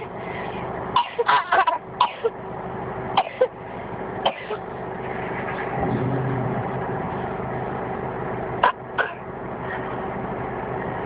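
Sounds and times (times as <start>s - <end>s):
steady background hum: 0.0s - 11.0s
baby coughing: 1.0s - 2.4s, 3.2s - 3.5s, 4.2s - 4.6s, 8.6s - 9.2s.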